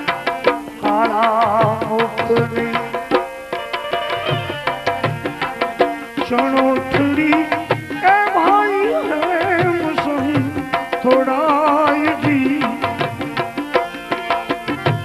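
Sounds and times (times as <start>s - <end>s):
tabla drumming: 0.0s - 15.0s.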